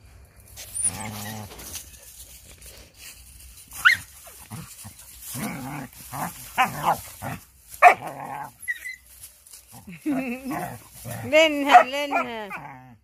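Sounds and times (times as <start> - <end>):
dogs growling: 4.3 - 8.6, 9.7 - 13.0
dog yelping: 7.8 - 9.1.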